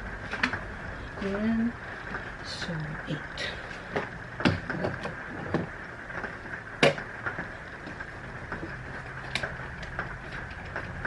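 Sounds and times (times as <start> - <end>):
faint steady hum: 0.0 - 11.0
plastic clicks and knocks: 3.9 - 10.9.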